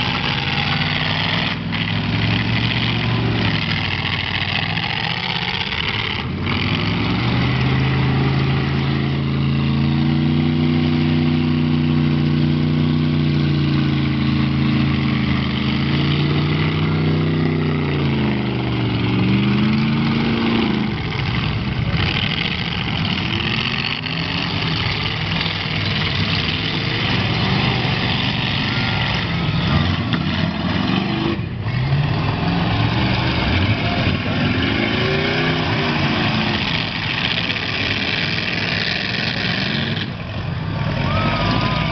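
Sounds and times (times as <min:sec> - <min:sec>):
car engines revving: 0:00.0 - 0:41.9
crowd noise: 0:10.6 - 0:41.9.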